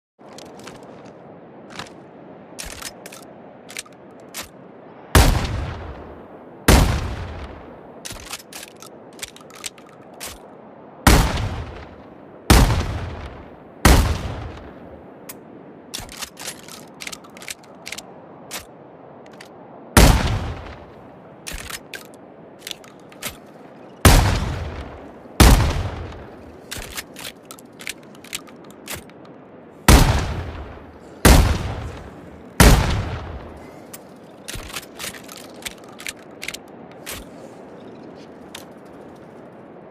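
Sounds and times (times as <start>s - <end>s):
shotgun shots: 11.1s - 11.8s, 24.1s - 26.2s, 29.9s - 33.6s.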